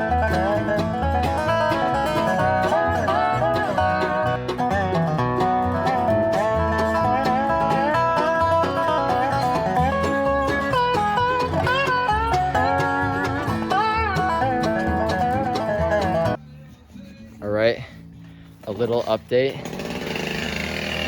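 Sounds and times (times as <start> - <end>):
bass beat: 0.0 - 16.8
upbeat plucked string music: 0.0 - 19.5.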